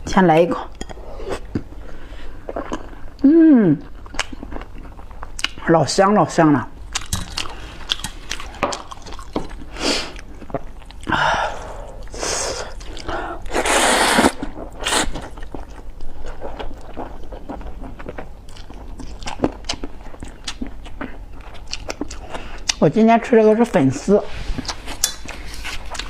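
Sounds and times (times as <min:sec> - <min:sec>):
wet chewing and lip-smacking: 0:03.8 - 0:05.7, 0:06.8 - 0:11.2, 0:11.9 - 0:13.5, 0:14.2 - 0:22.8, 0:24.5 - 0:26.0
person slurping noodles: 0:11.4 - 0:15.2.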